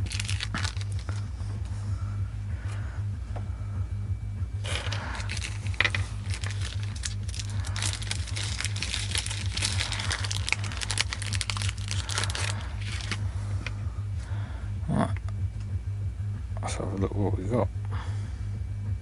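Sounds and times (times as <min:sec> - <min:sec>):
packaging crinkling: 0:00.0 - 0:01.2, 0:04.6 - 0:13.2
steady low hum: 0:00.0 - 0:19.0.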